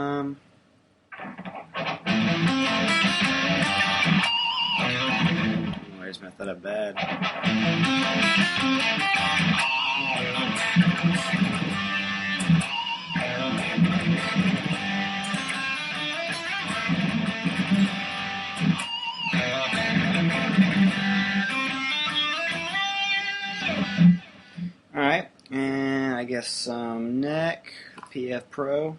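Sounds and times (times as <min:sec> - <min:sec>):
electric guitar riffs: 0:01.1 - 0:24.9.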